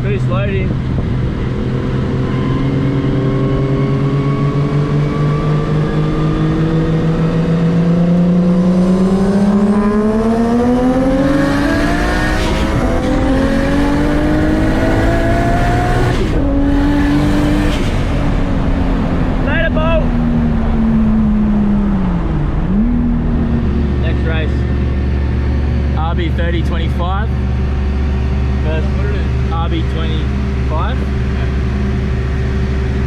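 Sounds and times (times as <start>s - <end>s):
turbocharged car engine accelerating: 0.0s - 33.0s.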